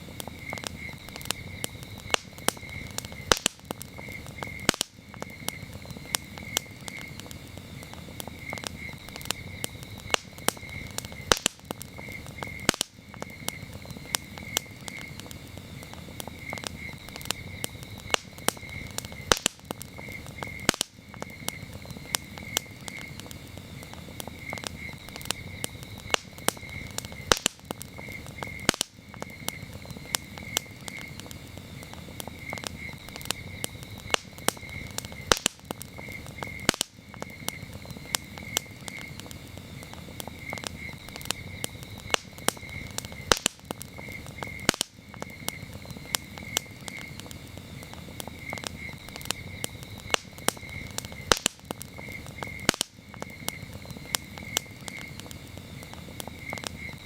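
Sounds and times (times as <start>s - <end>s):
campfire crackling and popping: 0.0s - 57.0s
crickets chirping: 0.0s - 57.0s.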